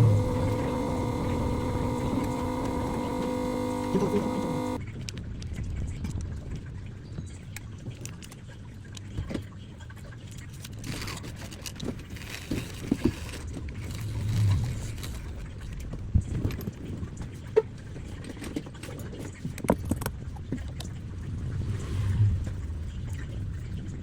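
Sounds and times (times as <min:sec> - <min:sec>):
low background hum: 0:00.0 - 0:04.8.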